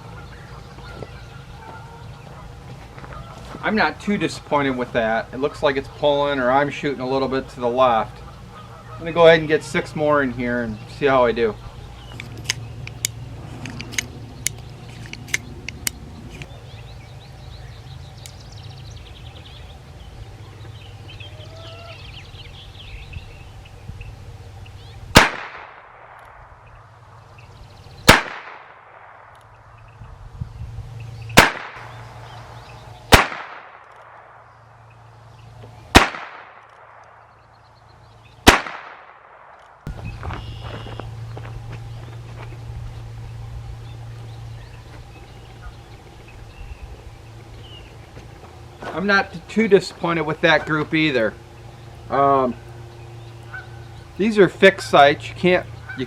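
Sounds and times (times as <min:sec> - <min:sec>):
revolver shots: 0:25.1 - 0:26.6, 0:31.4 - 0:34.5, 0:38.4 - 0:40.6.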